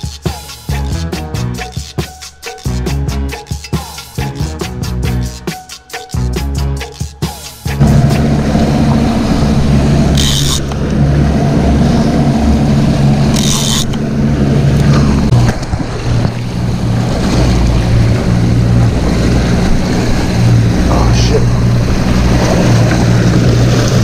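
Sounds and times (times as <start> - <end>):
water noise: 0.0 - 24.0
wind: 0.0 - 24.0
outboard engine running: 6.2 - 24.0.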